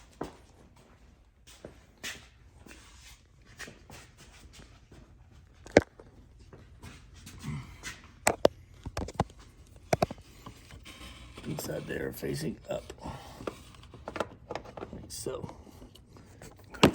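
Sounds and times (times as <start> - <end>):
clicks and knocks of parts handled: 8.2 - 11.6, 12.6 - 16.9.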